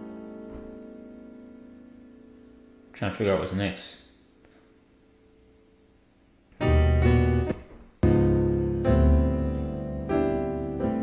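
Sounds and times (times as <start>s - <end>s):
piano chords: 0.0s - 3.5s, 6.6s - 11.0s.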